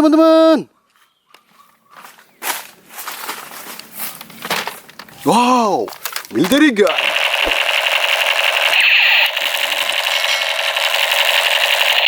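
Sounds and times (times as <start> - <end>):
toy gun electronic firing sound: 6.9 - 12.0.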